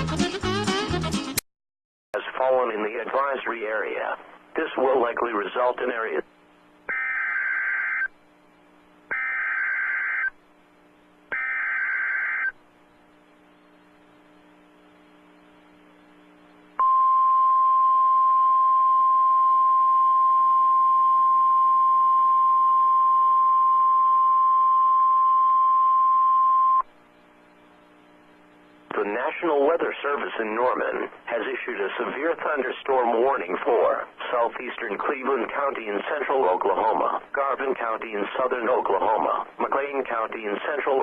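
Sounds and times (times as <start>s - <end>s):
steady warning alarm tone: 6.9s - 8.1s, 9.1s - 10.4s, 11.3s - 12.6s.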